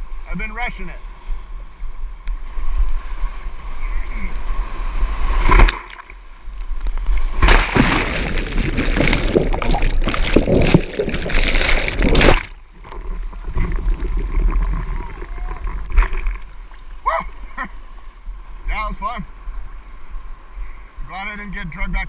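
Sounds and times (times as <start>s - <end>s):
water splash: 5.0s - 6.3s, 7.0s - 17.1s.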